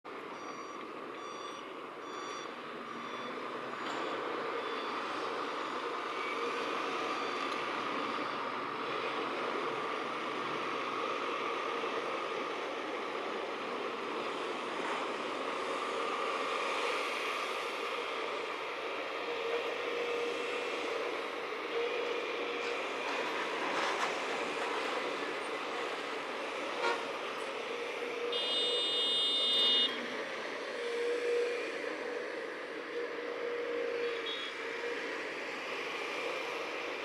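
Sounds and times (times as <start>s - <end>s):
heavy road-works machinery running: 0.1s - 37.0s
short high-pitched horn toot: 28.3s - 30.0s.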